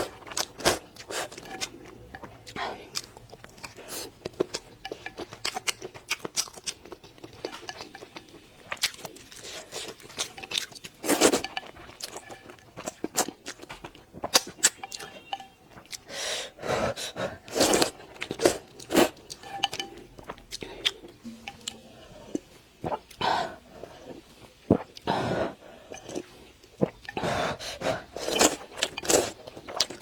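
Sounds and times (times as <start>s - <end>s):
chewing with crunchy clicks: 0.0s - 16.1s, 17.4s - 23.2s, 28.2s - 30.0s.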